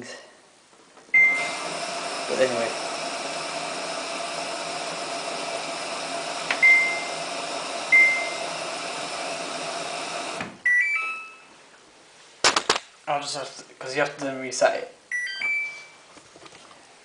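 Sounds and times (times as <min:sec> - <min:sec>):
washing machine humming: 0:01.1 - 0:10.7
control panel beeps: 0:06.6 - 0:07.1, 0:07.9 - 0:08.4, 0:10.6 - 0:11.5, 0:15.1 - 0:16.0
beeps at several pitches: 0:10.6 - 0:11.5, 0:15.1 - 0:16.0.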